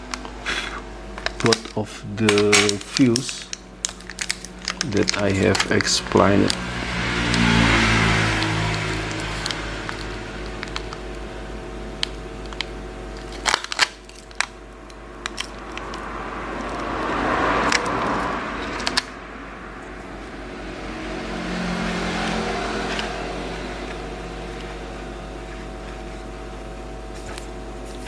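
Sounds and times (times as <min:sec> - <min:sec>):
electrical hum: 0:00.0 - 0:28.0
small tools clicking and tapping: 0:01.2 - 0:06.6.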